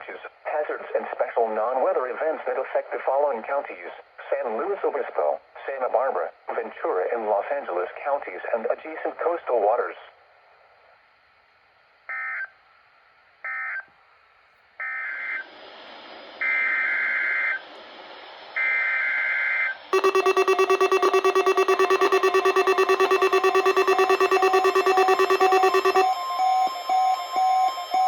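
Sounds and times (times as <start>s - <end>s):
buzzy digital data bursts: 20.0s - 26.0s
rapidly pulsing alert tone: 20.0s - 26.1s.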